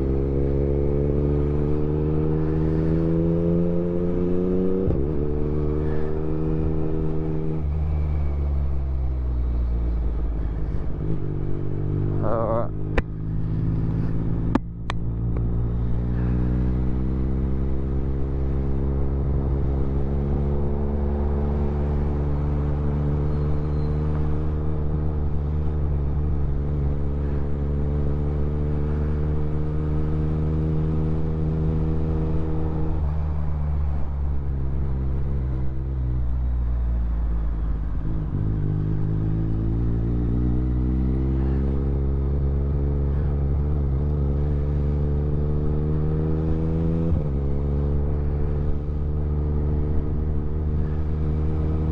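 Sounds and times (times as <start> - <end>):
motorcycle engine running: 38.8 - 51.9.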